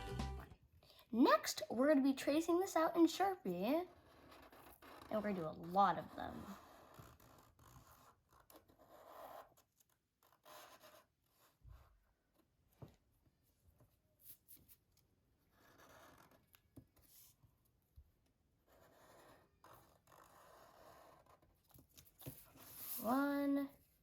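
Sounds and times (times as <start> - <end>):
marker scratching on paper: 3.5 - 12.4, 15.5 - 17.4, 18.6 - 23.7.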